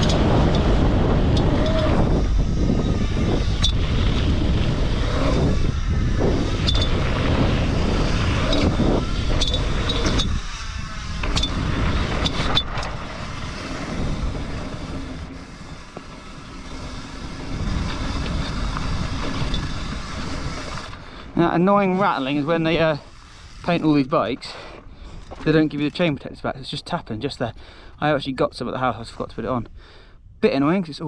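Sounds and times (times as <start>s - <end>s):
bike tyres over rocky dirt: 0.0s - 29.6s
wind buffeting microphone: 0.0s - 31.0s.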